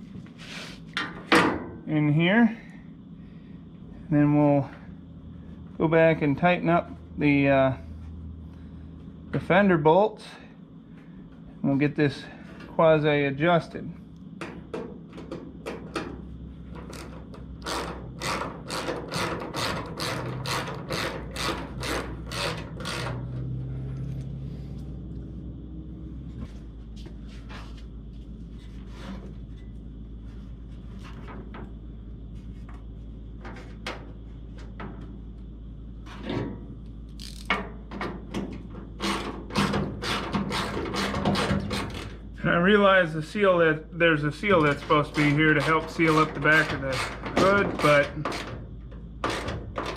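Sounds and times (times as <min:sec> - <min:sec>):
hand ratchet clicking: 0:17.0 - 0:23.2, 0:37.2 - 0:37.6.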